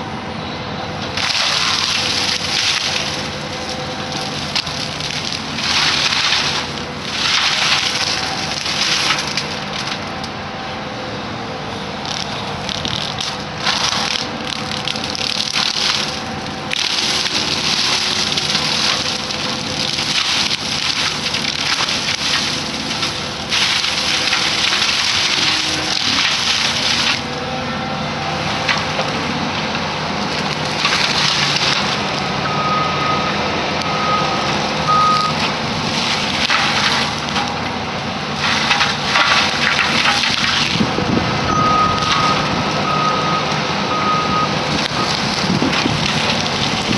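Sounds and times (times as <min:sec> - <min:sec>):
mower grinding through brush: 0:01.2 - 0:10.4, 0:12.0 - 0:32.4, 0:33.8 - 0:46.9
backup alarm beeping: 0:32.4 - 0:35.4, 0:41.5 - 0:45.2.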